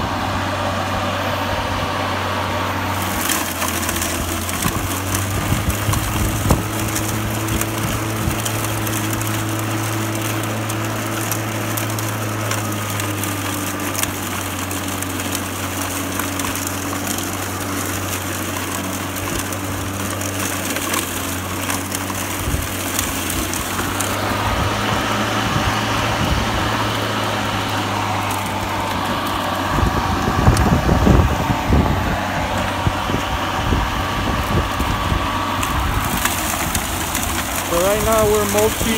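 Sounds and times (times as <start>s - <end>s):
lawn mower running: 0.0s - 38.9s
ticks and knocks from cut grass: 2.9s - 33.4s, 34.4s - 38.9s.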